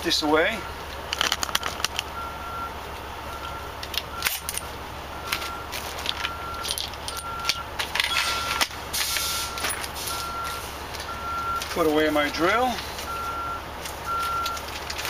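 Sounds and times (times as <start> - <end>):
reversing beeper: 1.6 - 14.6
tools clicking and rattling: 5.3 - 8.7.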